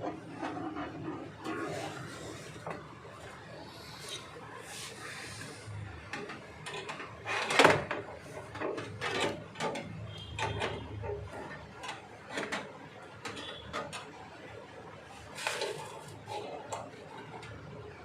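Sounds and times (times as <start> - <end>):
hard objects clicking and knocking: 5.8 - 14.4.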